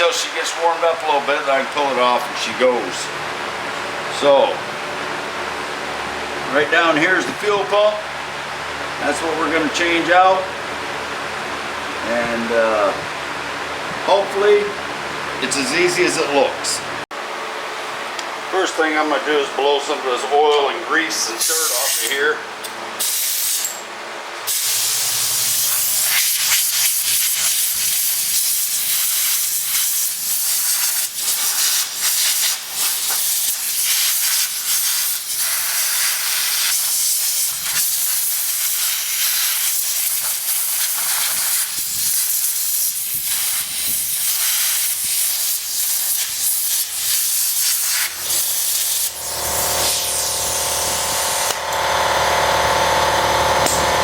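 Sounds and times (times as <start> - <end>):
steady motor hum: 0.1 - 21.3, 48.1 - 54.0
compressed air blow gun hissing: 24.5 - 51.5.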